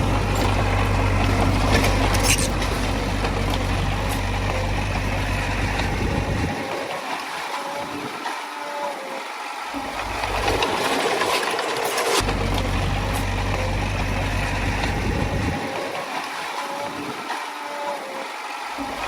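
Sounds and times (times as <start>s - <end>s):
heavy diesel engine working: 0.0s - 7.0s, 9.7s - 16.1s.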